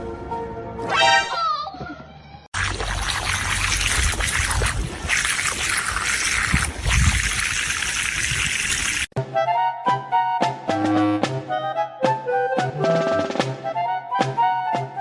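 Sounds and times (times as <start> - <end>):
running water rushing: 2.6 - 9.2.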